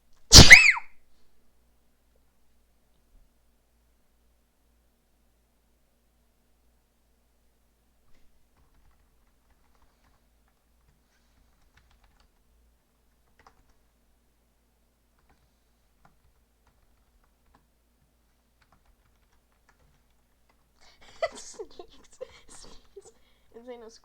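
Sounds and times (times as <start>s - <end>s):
keyboard typing clicks: 13.2s - 13.8s.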